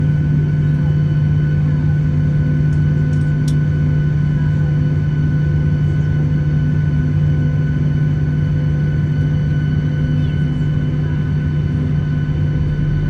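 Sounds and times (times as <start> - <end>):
aircraft engines droning: 0.0 - 13.0.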